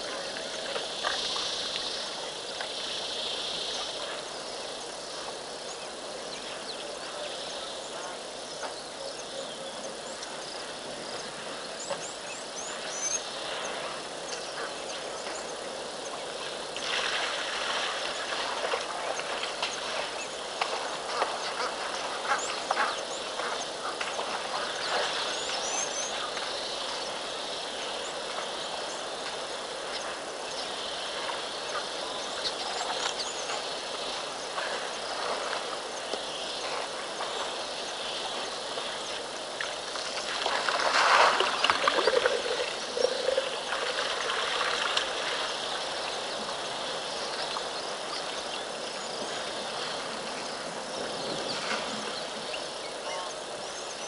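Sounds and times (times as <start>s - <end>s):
birds chirping: 0.0s - 54.0s
steady hiss: 0.0s - 54.0s.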